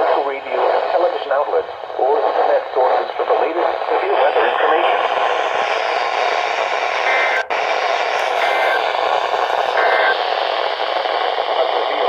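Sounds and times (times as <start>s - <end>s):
radio receiver hiss: 0.0s - 12.0s
two-tone digital data bursts: 7.0s - 7.4s, 8.2s - 10.3s.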